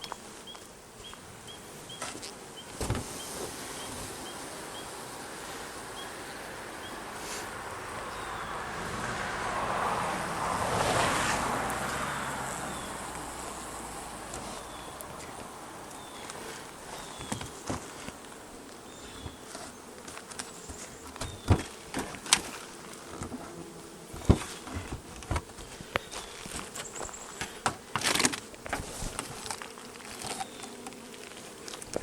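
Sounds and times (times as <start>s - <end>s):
bees buzzing: 0.0s - 32.0s
rustling scrape: 7.2s - 7.5s, 16.2s - 18.2s, 19.0s - 32.0s.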